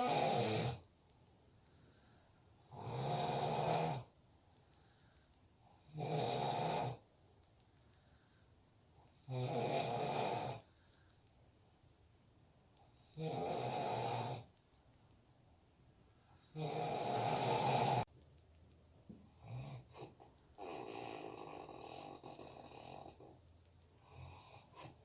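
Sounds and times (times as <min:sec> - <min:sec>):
man snoring: 0:00.0 - 0:00.9, 0:02.6 - 0:04.1, 0:05.8 - 0:07.1, 0:09.0 - 0:10.7, 0:13.0 - 0:14.5, 0:16.4 - 0:18.1, 0:19.4 - 0:23.3.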